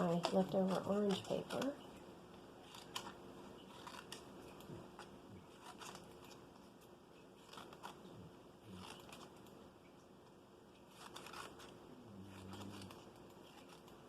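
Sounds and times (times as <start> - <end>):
scissors snipping paper: 0.0 - 1.8, 2.6 - 6.5, 7.4 - 8.1, 8.8 - 9.5, 10.9 - 14.0.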